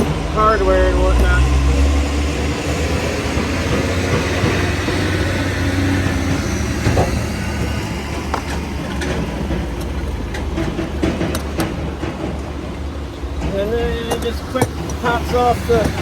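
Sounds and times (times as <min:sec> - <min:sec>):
low engine rumble: 0:00.0 - 0:16.0
sharp clicks and knocks: 0:06.0 - 0:16.0.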